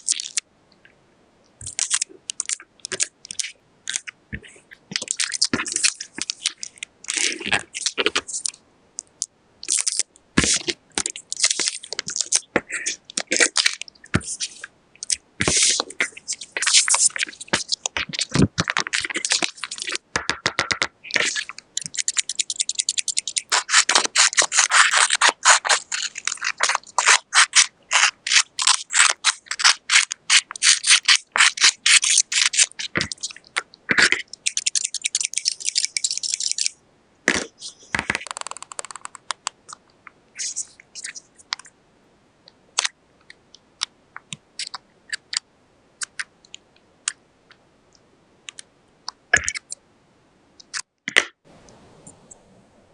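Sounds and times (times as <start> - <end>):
paper crinkling and scraping: 23.3 - 36.6.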